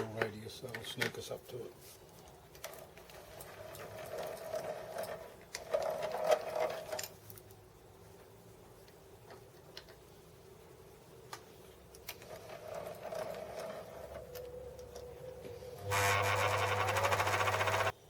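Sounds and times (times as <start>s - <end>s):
boring bar cutting metal: 15.8s - 17.9s
machine tool motor running: 15.8s - 18.0s.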